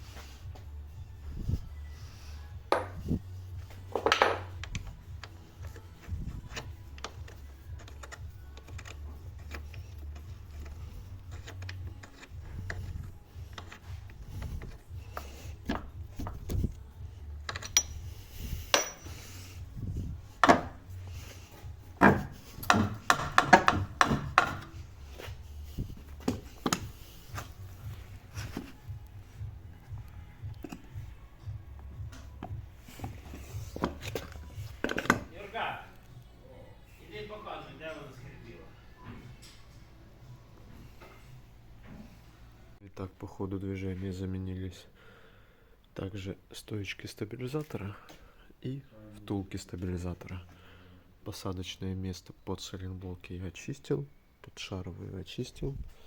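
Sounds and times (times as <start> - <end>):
tools and metal parts clinking: 3.9 - 16.8, 17.4 - 19.4.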